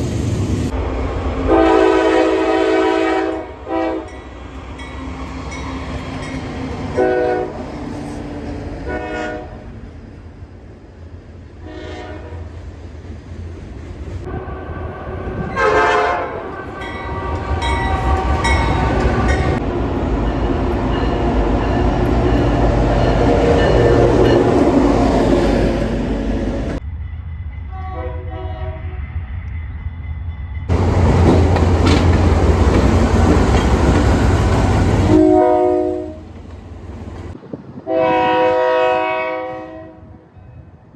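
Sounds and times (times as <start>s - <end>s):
moving train rumble and clatter: 0.0s - 40.9s
locomotive air horn blasts: 1.5s - 4.2s, 6.9s - 7.6s, 8.8s - 9.7s, 11.6s - 12.4s, 14.3s - 19.6s, 27.8s - 29.0s, 35.0s - 36.3s, 37.8s - 40.2s.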